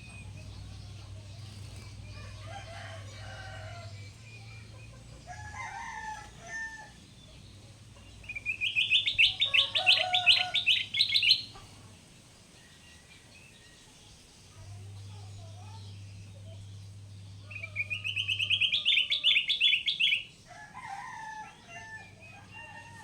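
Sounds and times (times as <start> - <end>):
bulbul calling: 8.2 - 11.6, 17.4 - 20.3.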